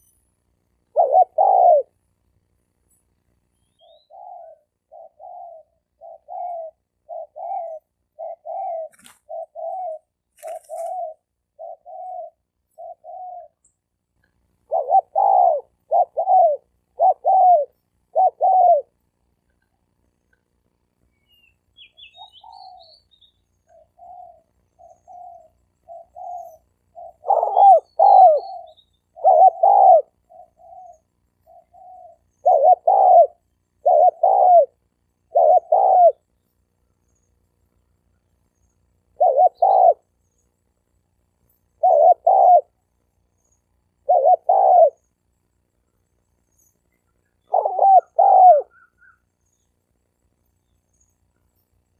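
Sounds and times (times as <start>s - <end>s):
doves cooing: 0.9s - 2.0s, 3.8s - 13.6s, 14.6s - 19.0s, 23.6s - 36.3s, 39.1s - 40.1s, 41.7s - 42.9s, 43.8s - 45.1s, 47.1s - 49.2s.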